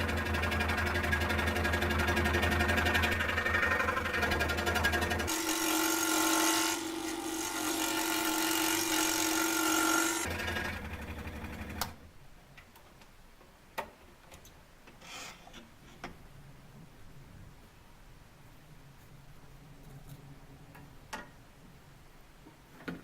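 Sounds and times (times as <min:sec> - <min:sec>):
scroll saw running: 0:00.0 - 0:11.9.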